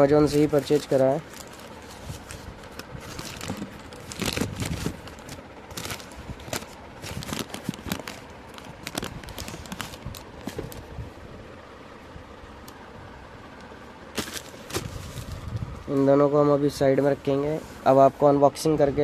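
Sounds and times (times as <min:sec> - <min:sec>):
paper and cardboard rustling: 0:00.0 - 0:10.9, 0:14.2 - 0:15.6.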